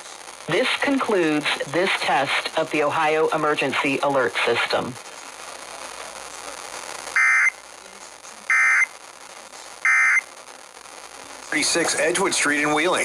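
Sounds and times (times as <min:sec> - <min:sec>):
faint broadcast hiss: 0:00.0 - 0:13.0
digital data screech bursts: 0:09.9 - 0:10.2.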